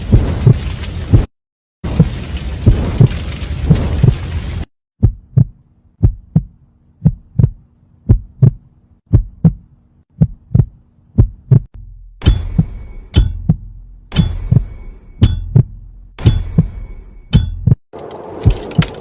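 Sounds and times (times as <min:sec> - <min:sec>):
heartbeat thumps: 0:05.0 - 0:17.8.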